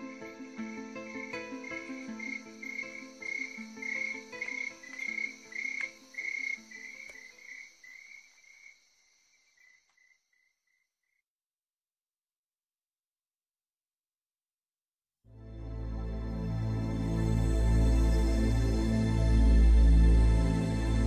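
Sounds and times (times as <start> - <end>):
background music: 0.0 - 8.2, 15.3 - 21.0.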